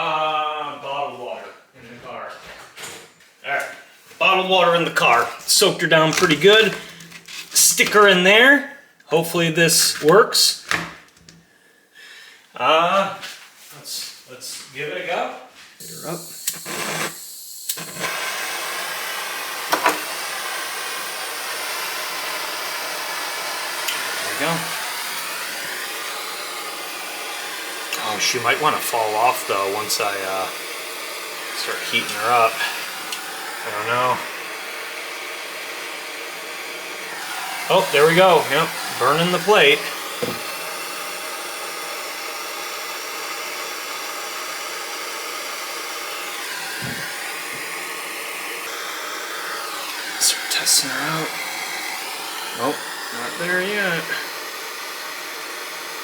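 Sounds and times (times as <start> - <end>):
soldering torch hissing: 4.8 - 8.2, 15.8 - 56.0.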